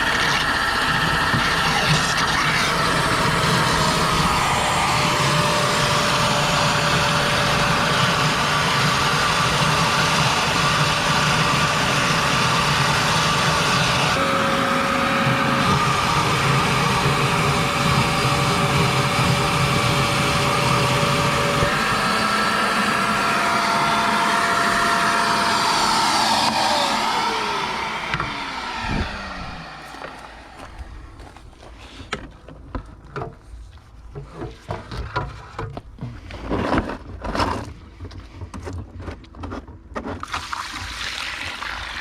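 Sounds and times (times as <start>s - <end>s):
shop vacuum motor whine: 0.0s - 31.5s.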